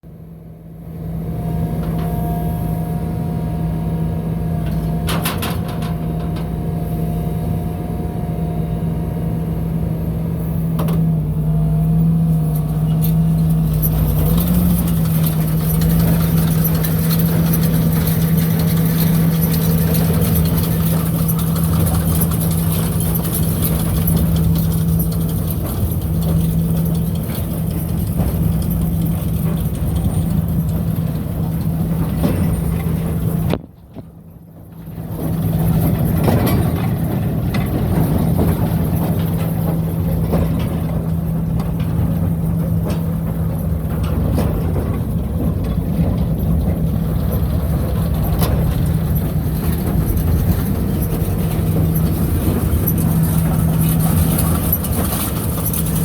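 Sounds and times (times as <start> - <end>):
engine running steadily: 0.0 - 56.0
hissing rattling machinery: 12.6 - 33.5, 34.8 - 56.0.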